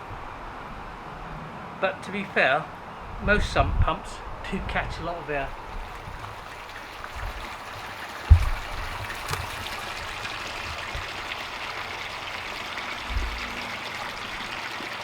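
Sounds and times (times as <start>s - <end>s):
water rushing from sump pump: 5.4s - 15.0s
dull low thump: 8.3s - 11.1s.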